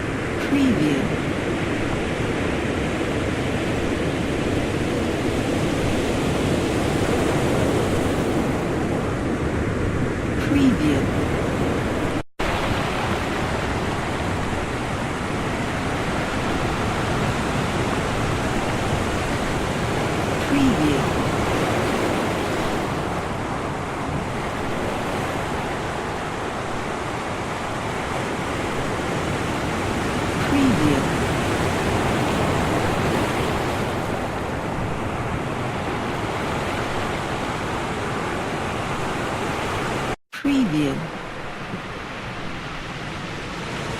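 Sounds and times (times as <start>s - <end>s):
ocean surf breaking: 0.0s - 40.2s.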